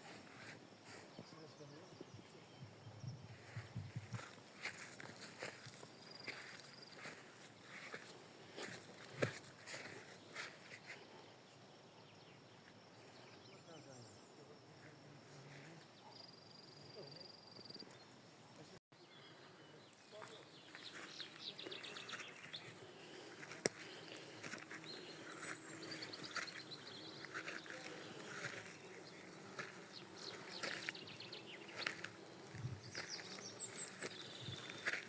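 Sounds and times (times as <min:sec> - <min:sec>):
faint outdoor background: 0:00.0 - 0:35.0
small birds chirping: 0:00.0 - 0:35.0
faint insect buzz: 0:20.8 - 0:35.0.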